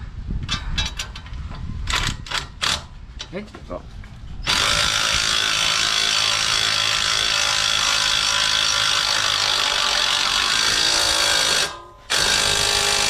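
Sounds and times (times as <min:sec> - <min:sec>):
power tool running: 0:04.5 - 0:13.0.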